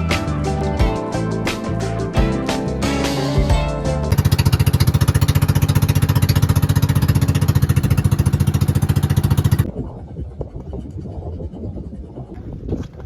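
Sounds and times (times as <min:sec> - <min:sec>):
small engine chugging: 0:04.1 - 0:12.2.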